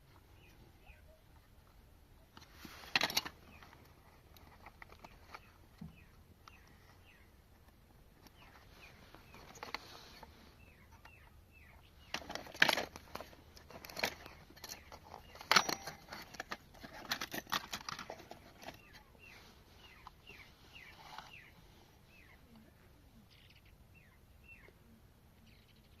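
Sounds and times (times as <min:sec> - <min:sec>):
faint bird chirps: 0:00.1 - 0:02.4, 0:03.4 - 0:12.6, 0:18.5 - 0:26.0.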